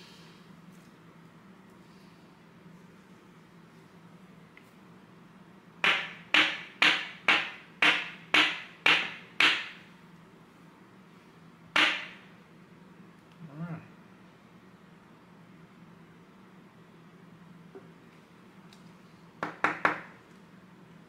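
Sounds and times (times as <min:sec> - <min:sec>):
sharp knocks: 0:05.8 - 0:09.8, 0:11.8 - 0:12.2.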